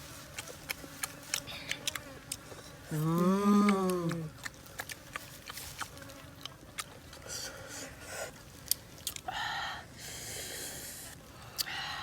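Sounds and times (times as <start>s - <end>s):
person chewing crunchy food: 0.0s - 7.3s, 8.6s - 9.3s.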